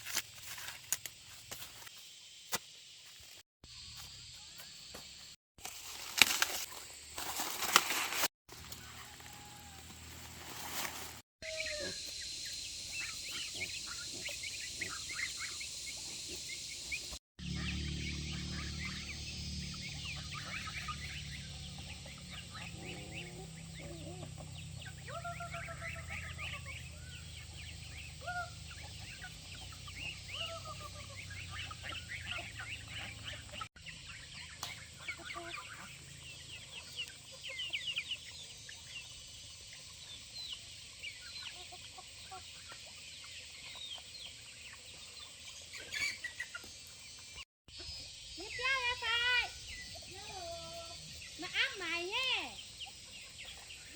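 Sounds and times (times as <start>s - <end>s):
chicks peeping: 11.4s - 53.9s
hens clucking: 18.3s - 33.7s.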